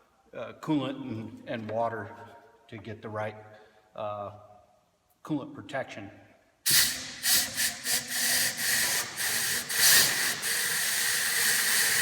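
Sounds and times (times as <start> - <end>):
compressed air hissing: 6.7 - 12.0.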